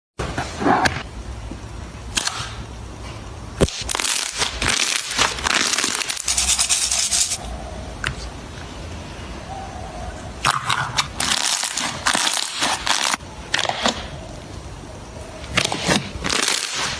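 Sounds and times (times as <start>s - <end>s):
low steady hum: 0.2s - 16.4s
slime squishing and crackling: 3.6s - 7.4s, 10.7s - 14.1s, 15.6s - 16.9s.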